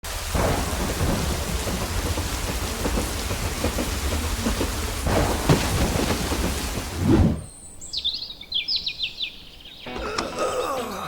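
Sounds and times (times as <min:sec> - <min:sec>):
heavy rain pattering: 0:00.0 - 0:07.5
low rumble of thunder: 0:00.1 - 0:07.5.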